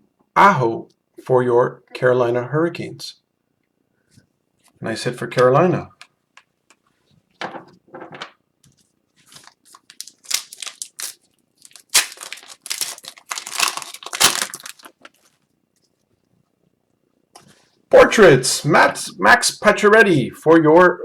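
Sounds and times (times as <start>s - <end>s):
cards being handled: 8.7s - 15.3s
wrapper crinkling and tearing: 9.2s - 15.4s.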